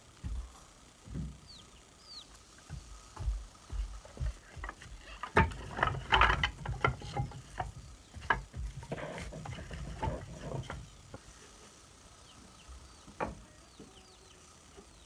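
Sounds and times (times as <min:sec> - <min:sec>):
rustling: 0:02.8 - 0:11.5.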